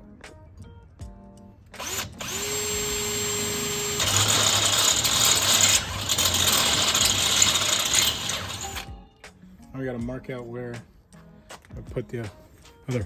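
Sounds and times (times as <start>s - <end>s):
electric drill drilling into metal: 1.8s - 8.9s.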